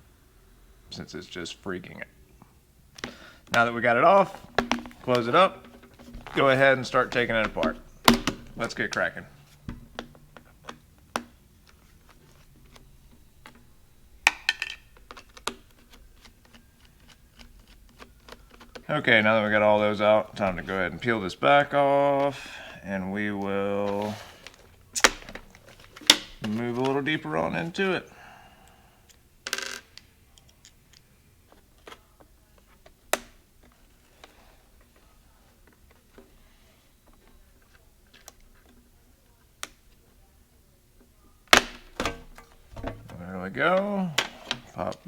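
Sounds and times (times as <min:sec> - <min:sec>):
plastic clicks of laptop cover: 0:04.4 - 0:18.9, 0:23.8 - 0:26.9, 0:31.5 - 0:36.4, 0:41.5 - 0:43.2
sharp plastic snap: 0:04.5 - 0:09.0, 0:24.4 - 0:26.6, 0:33.1 - 0:33.8, 0:41.5 - 0:43.2
screwdriver clicks and taps: 0:09.7 - 0:11.8, 0:14.2 - 0:18.9.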